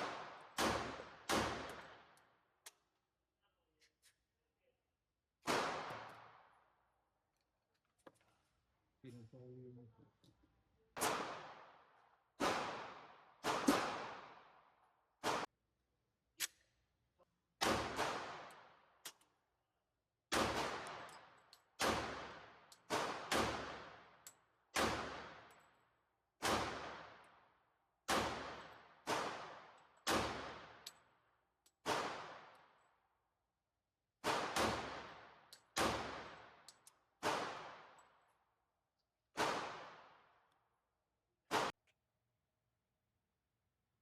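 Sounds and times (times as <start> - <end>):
pistol shots with echo: 0.0 - 2.2, 5.4 - 6.6, 11.0 - 14.6, 15.2 - 15.5, 17.6 - 18.9, 20.3 - 24.2, 24.8 - 25.6, 26.4 - 27.3, 28.1 - 30.8, 31.8 - 32.7, 34.2 - 38.1, 39.4 - 40.3.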